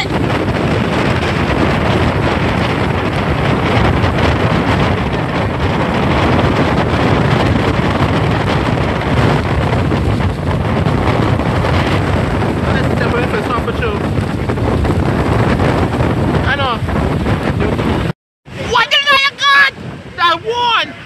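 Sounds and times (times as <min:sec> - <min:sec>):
heavy surf: 0:00.0 - 0:21.0
wind buffeting microphone: 0:00.0 - 0:21.0.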